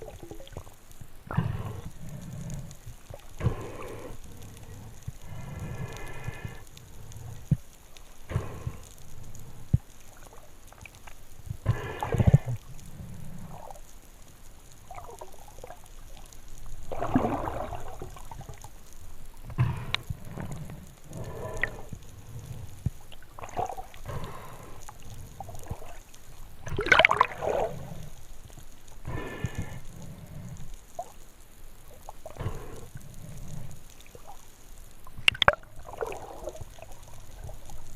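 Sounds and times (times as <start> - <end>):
water gurgling and bubbling: 16.9 - 18.6, 23.2 - 24.5, 26.6 - 28.0, 35.0 - 37.9.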